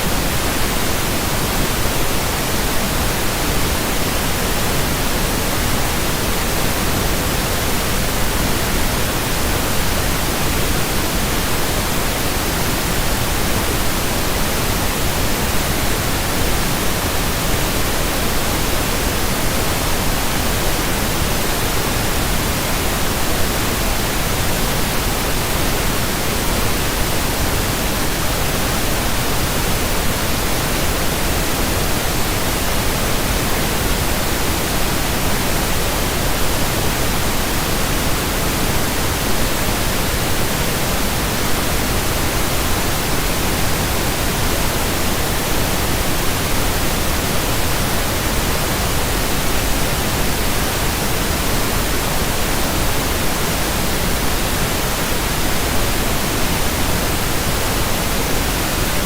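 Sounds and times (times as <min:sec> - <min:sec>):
pink noise hiss: 0:00.0 - 0:59.0.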